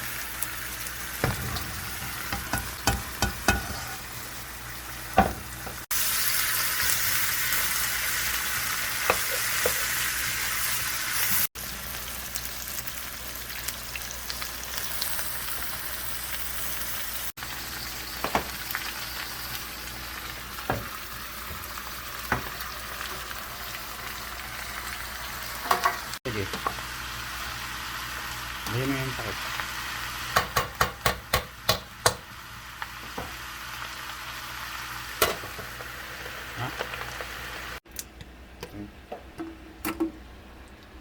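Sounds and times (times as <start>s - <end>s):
meat sizzling in a pan: 0.0s - 37.8s.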